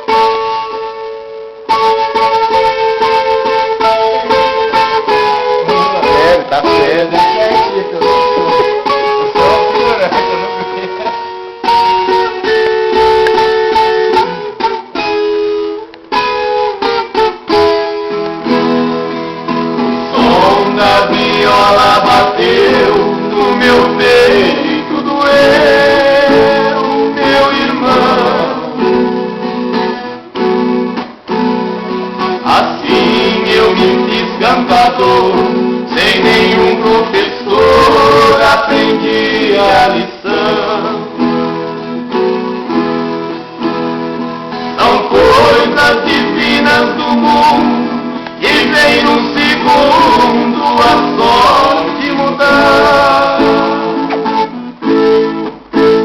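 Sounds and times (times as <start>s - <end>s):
plucked acoustic string instrument: 0.0s - 56.0s
person singing: 2.6s - 14.5s, 20.0s - 29.2s, 32.2s - 41.5s, 44.7s - 56.0s.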